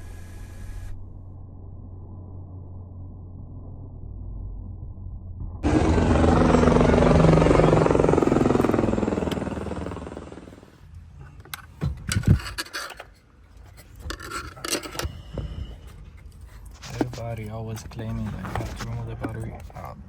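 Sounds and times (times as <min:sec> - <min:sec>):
car engine revving: 0:05.6 - 0:10.7.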